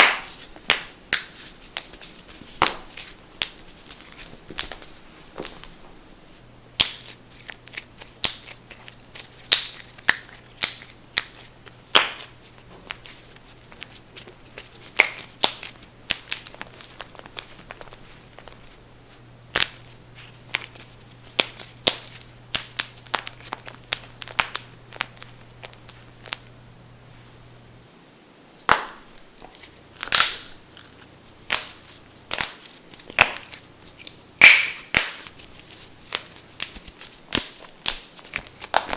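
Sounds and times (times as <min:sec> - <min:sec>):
knuckles cracking: 0:28.7 - 0:38.9.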